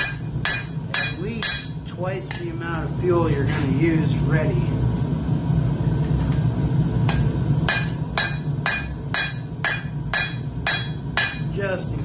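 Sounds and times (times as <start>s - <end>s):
hammer striking steel on anvil: 0.0s - 2.5s, 7.1s - 11.6s
gas forge roaring: 0.0s - 12.0s.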